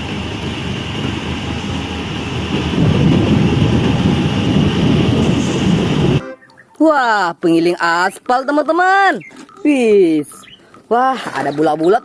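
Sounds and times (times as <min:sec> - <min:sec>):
low rumbling noise: 0:00.0 - 0:06.2.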